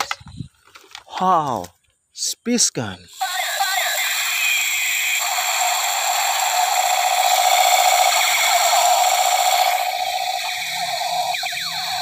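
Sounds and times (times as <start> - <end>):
toy laser gun warbling: 3.2 - 12.0.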